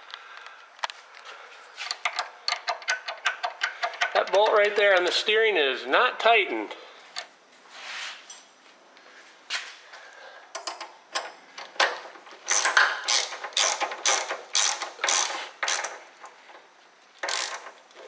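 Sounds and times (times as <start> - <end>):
ratchet wrench clicking: 1.9 - 5.2, 12.5 - 16.1, 17.2 - 17.8.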